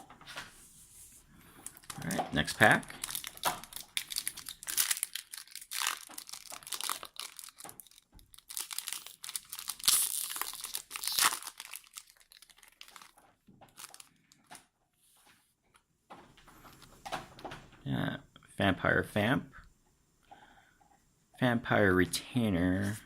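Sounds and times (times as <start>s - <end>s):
foil wrapper crinkling and tearing: 1.6s - 14.4s.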